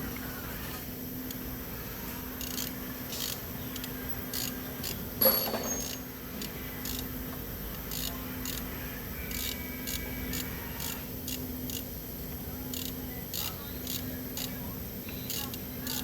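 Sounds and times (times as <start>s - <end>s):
steady low hum: 0.0s - 16.0s
metal clink ringing: 5.2s - 6.1s.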